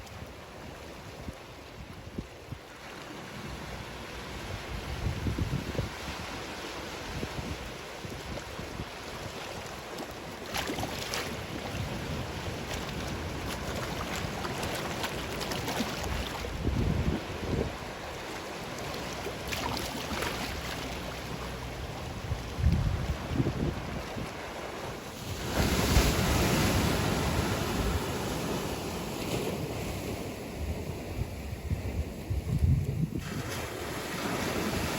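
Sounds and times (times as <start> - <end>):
wind rumbling on microphone: 0.0 - 2.8, 3.4 - 34.9
sea waves washing on shore: 0.0 - 34.9.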